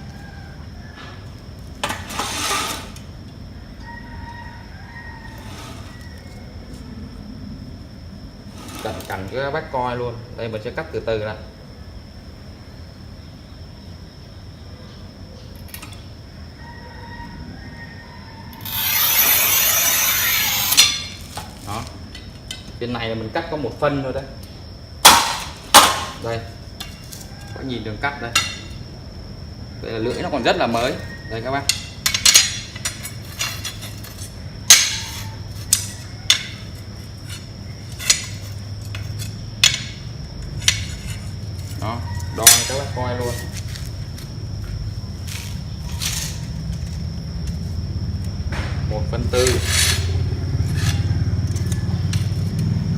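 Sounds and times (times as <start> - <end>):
steady low hum: 0.0 - 52.9
tile cutter scraping across tile: 1.9 - 3.0, 5.4 - 6.0, 8.6 - 9.1, 18.6 - 21.2, 49.5 - 51.0.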